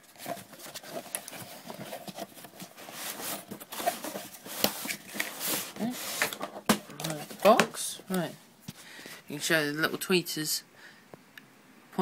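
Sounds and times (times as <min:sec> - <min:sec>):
cardboard packaging rustling: 0:00.0 - 0:09.2.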